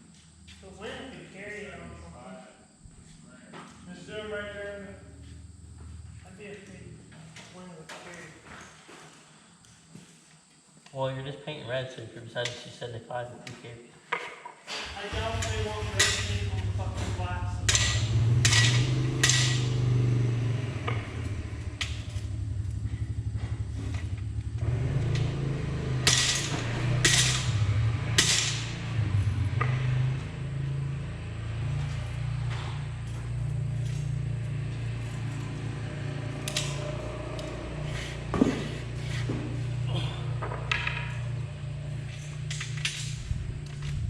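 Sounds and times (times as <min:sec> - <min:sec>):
motor droning: 0:15.1 - 0:44.0.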